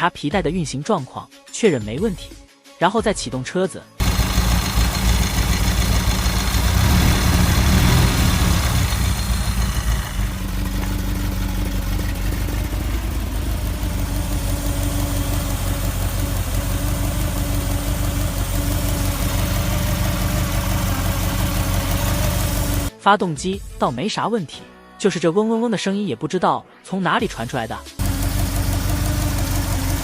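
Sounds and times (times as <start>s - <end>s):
car engine idling: 4.0s - 22.9s, 28.0s - 30.0s.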